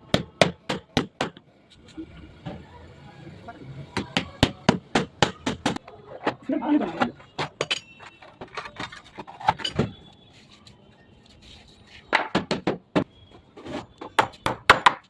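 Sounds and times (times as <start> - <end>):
tools knocking on wood or metal: 14.1 - 15.0.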